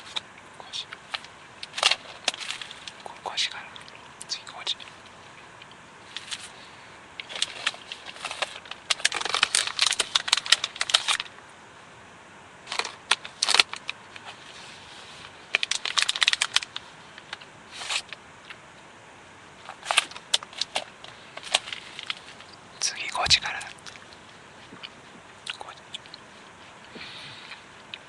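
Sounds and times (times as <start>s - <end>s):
rustling and crackling: 0.9s - 4.1s, 4.7s - 11.4s, 19.6s - 28.0s.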